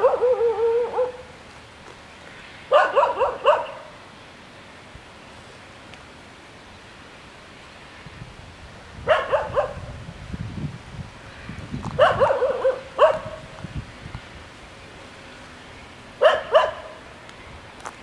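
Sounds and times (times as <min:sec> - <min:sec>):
dog barking: 0:00.0 - 0:01.3, 0:02.7 - 0:03.9, 0:09.1 - 0:09.9, 0:12.0 - 0:13.4, 0:16.2 - 0:17.0.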